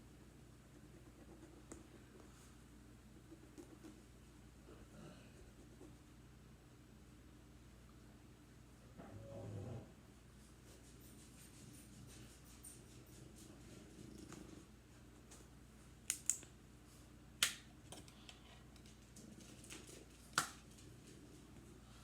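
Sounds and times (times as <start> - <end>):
dog snoring softly: 9.0 - 10.0.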